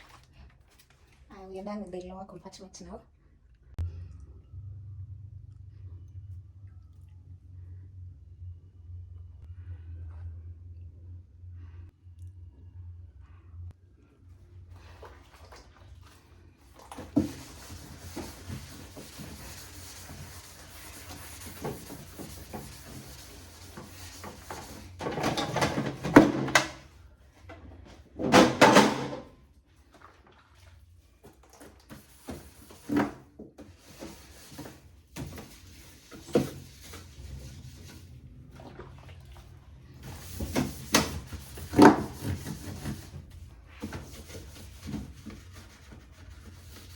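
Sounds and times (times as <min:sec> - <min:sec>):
rubbing and scraping: 0:16.7 - 0:26.6, 0:31.6 - 0:38.3, 0:40.0 - 0:46.9.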